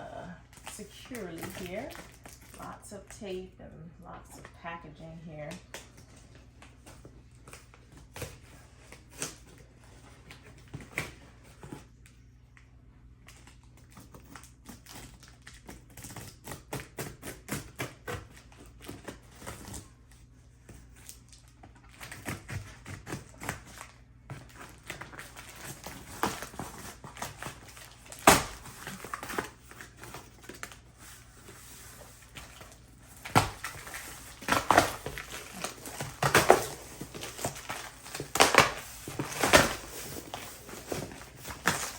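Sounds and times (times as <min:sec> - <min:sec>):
cardboard box being opened: 0:21.9 - 0:41.9.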